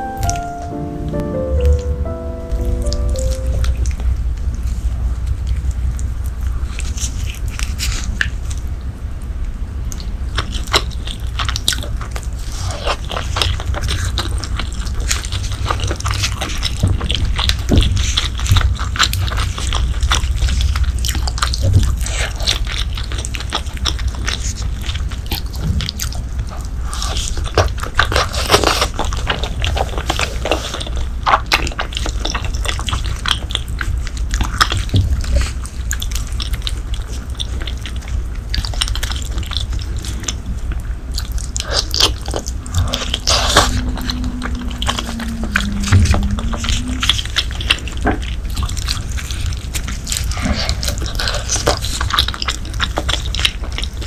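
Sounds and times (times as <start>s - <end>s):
chewing and mouth smacks: 9.9s - 44.1s, 44.8s - 54.0s
steady low hum: 40.2s - 48.8s.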